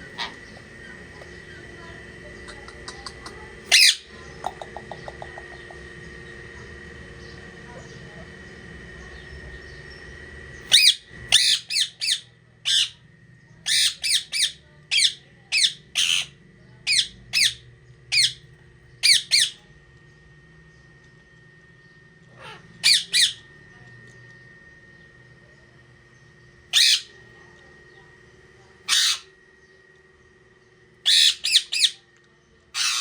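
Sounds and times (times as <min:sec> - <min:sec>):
parrot squawking: 0:00.0 - 0:01.0, 0:03.7 - 0:04.1, 0:10.7 - 0:13.0, 0:13.7 - 0:16.3, 0:22.4 - 0:23.4, 0:26.7 - 0:27.1, 0:28.9 - 0:29.3, 0:31.1 - 0:32.0, 0:32.8 - 0:33.0.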